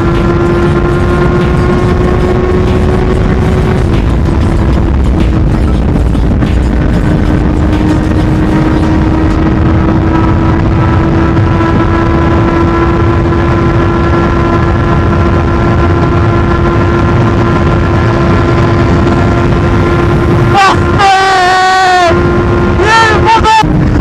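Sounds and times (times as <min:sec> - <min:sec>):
wavering pitched sound: 0:00.0 - 0:12.3, 0:18.0 - 0:24.0
motorcycle engine cruising: 0:00.0 - 0:24.0
wind rumble on microphone: 0:00.0 - 0:24.0.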